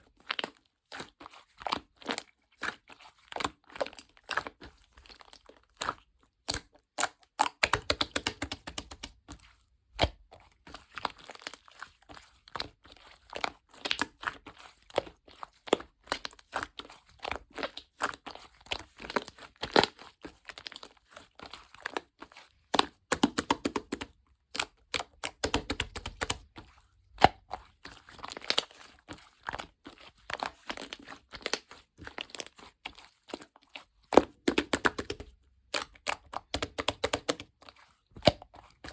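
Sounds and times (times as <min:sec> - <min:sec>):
slime crackling and popping: 0:06.5 - 0:09.1.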